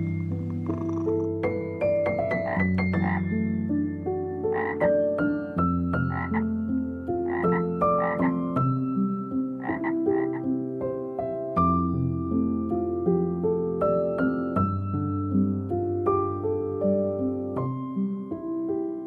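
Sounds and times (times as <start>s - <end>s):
soft piano music: 0.0s - 19.0s
frog croaking: 0.2s - 1.6s, 2.2s - 3.4s, 4.2s - 4.9s, 6.0s - 6.5s, 7.2s - 8.6s, 9.6s - 10.5s.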